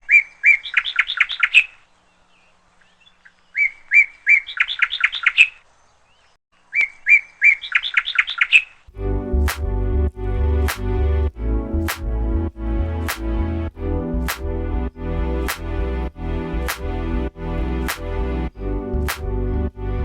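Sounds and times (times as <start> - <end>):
songbird singing: 0.0 - 8.9.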